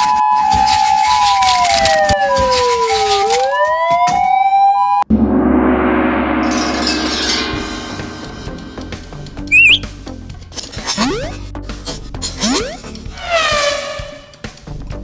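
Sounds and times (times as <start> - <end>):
siren winding down and up: 0.0 - 5.1, 9.5 - 9.8, 10.9 - 11.4, 12.4 - 14.4
two-tone police siren: 0.0 - 5.1, 12.4 - 14.3
ringing crash: 5.1 - 9.9.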